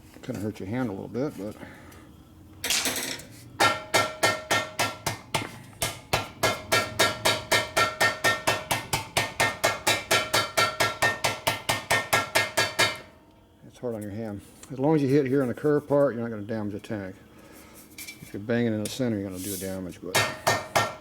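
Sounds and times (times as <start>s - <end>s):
metal tank banged by hand: 3.6s - 13.1s, 20.2s - 21.0s.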